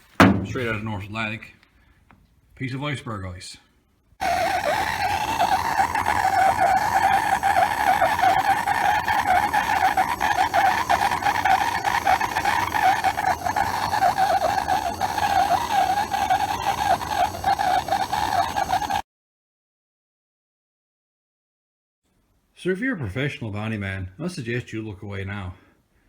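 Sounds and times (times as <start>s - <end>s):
gas torch flame rushing: 4.2s - 19.0s.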